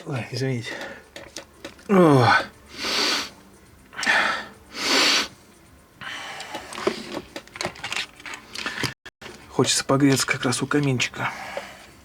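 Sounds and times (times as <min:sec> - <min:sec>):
small things clicking and rustling: 0:00.3 - 0:01.9, 0:06.4 - 0:11.1
forceful hissing exhalations: 0:02.7 - 0:03.4, 0:04.0 - 0:05.4.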